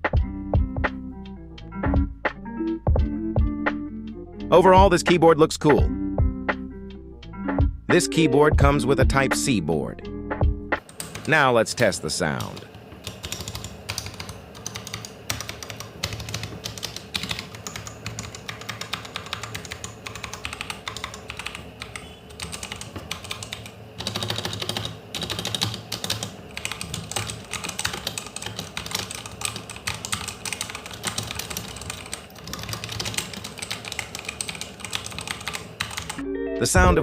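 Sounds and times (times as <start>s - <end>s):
fast typing on mechanical keyboard: 10.8s - 36.2s.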